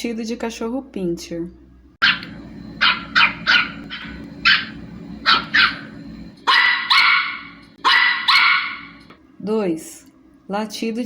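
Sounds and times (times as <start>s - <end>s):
low steady hum: 1.0s - 11.0s
small dog barking: 2.0s - 9.0s.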